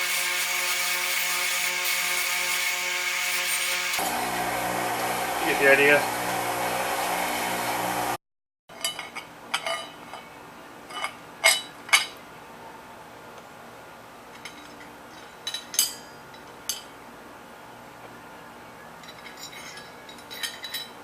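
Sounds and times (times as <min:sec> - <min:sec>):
wire wheel power tool running: 0:00.0 - 0:08.2
metal parts clinking on bench: 0:19.0 - 0:21.0.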